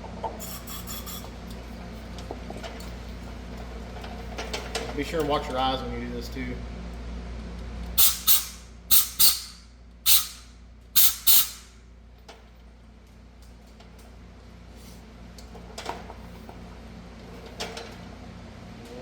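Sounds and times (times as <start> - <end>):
hissing spray blasts: 8.0 - 10.4, 11.0 - 11.7.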